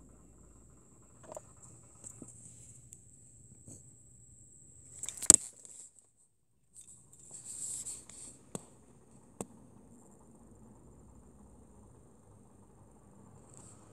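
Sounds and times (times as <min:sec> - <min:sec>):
air conditioner high-pitched whine: 0:00.0 - 0:13.9.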